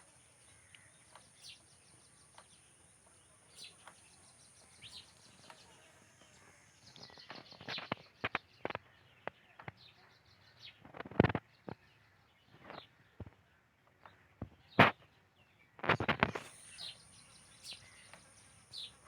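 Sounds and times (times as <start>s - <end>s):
bird chirps: 0.0s - 13.3s, 13.9s - 19.0s
steady high hiss: 16.3s - 19.0s.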